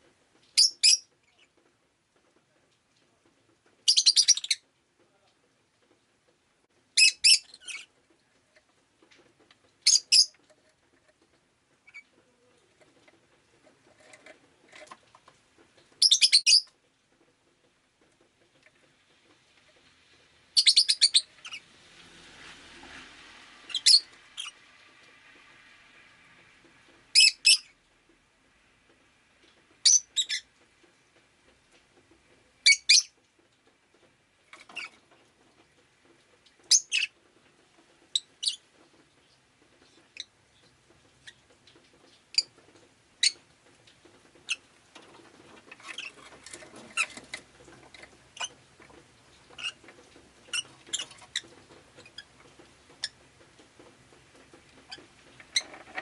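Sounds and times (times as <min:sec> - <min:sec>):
lovebird chirping: 0:00.6 - 0:01.5, 0:03.8 - 0:04.6, 0:07.0 - 0:07.9, 0:09.8 - 0:10.4, 0:16.0 - 0:16.7, 0:20.6 - 0:21.6, 0:23.7 - 0:24.6, 0:27.1 - 0:27.7, 0:29.8 - 0:30.5, 0:32.6 - 0:33.1, 0:36.7 - 0:37.1
scratchy bird chatter: 0:44.0 - 0:56.0.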